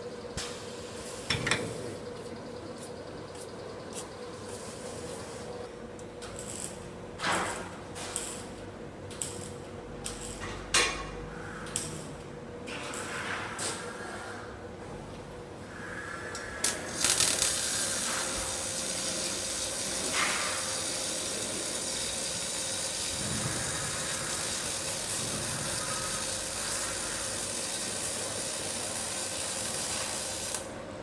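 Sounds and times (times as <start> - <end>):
welding arc crackling hiss: 0.4 - 2.4, 3.3 - 5.5, 6.2 - 10.4, 16.6 - 30.7
welding arc cracks: 16.6 - 30.7.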